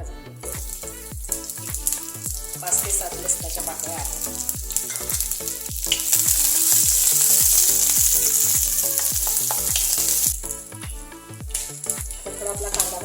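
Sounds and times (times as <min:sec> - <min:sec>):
background music with beat: 0:00.0 - 0:13.0
onion frying in hot oil: 0:00.6 - 0:10.5.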